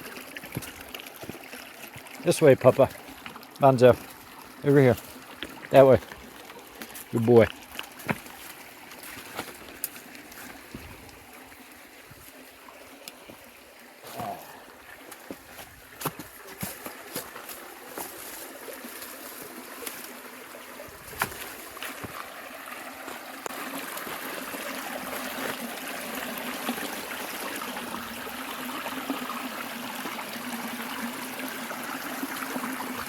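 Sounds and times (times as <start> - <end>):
stream running over rocks: 0.0 - 33.0.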